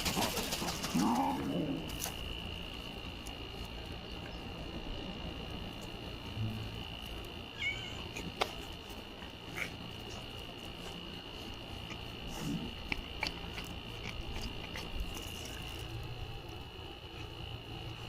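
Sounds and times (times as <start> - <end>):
high-pitched whine: 2.0 - 8.3
cats chewing: 7.0 - 18.0.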